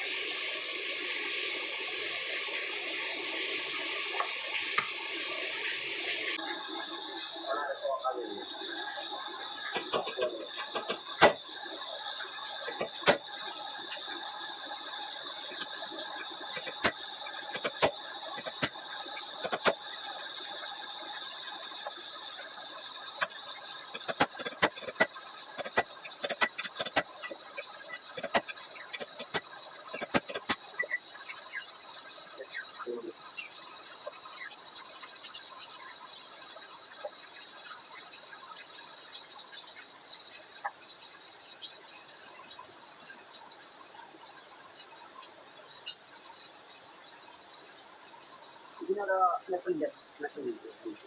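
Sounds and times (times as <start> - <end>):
high-pitched background hiss: 0.0 - 37.1, 45.7 - 51.0
metallic clicks of tools: 24.0 - 31.0.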